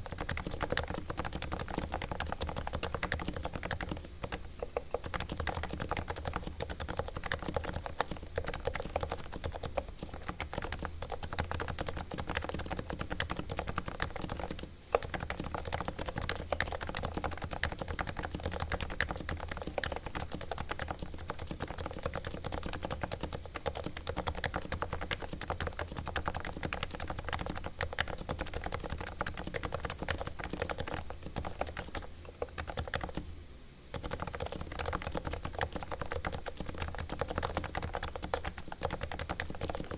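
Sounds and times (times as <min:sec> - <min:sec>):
fast typing on keyboard: 0:00.0 - 0:33.3, 0:33.9 - 0:39.9.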